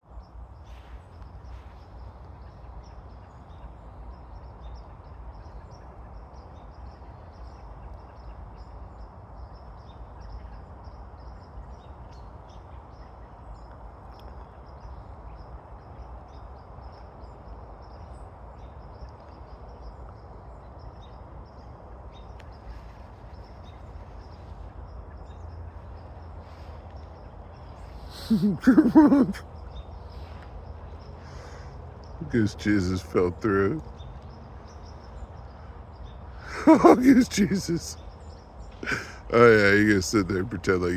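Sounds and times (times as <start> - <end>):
low outdoor noise: 0.0 - 40.9
faint high ticks: 13.6 - 14.5
loud voiced cry: 28.1 - 29.4, 36.4 - 38.0.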